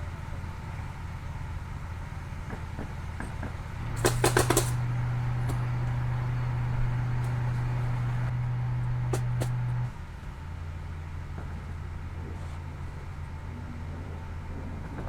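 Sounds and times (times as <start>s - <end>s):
steady low hum: 3.7s - 11.0s
nail gun shots: 4.0s - 4.8s.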